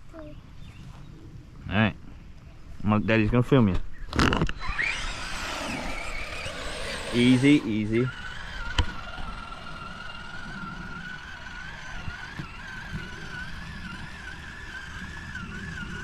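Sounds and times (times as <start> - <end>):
electric motor whine: 4.4 - 16.0
low rumble from truck: 4.9 - 16.0.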